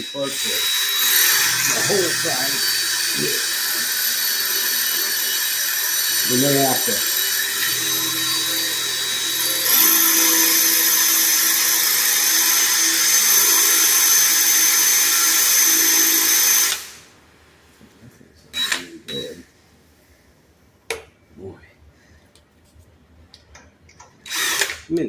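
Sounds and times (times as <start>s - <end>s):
electric drill whine: 0.0s - 17.0s, 24.3s - 24.9s.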